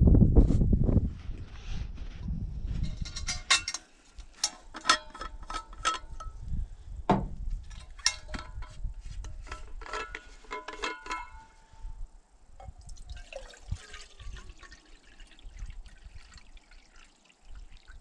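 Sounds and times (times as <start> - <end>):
metal pot clinks and knocks: 2.8 - 6.4, 7.7 - 11.8.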